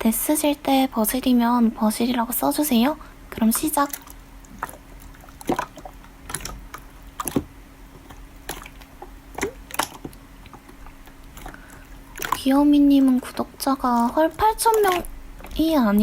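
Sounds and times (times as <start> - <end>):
faint steady hum: 0.0 - 16.0
slime clicking and crackling: 3.4 - 11.6.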